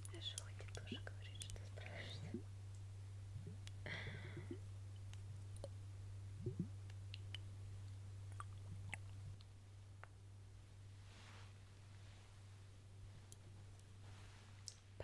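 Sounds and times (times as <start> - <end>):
mouth clicks and lip sounds: 0.0 - 3.8, 4.4 - 5.8, 6.4 - 10.2
steady low hum: 0.0 - 15.0.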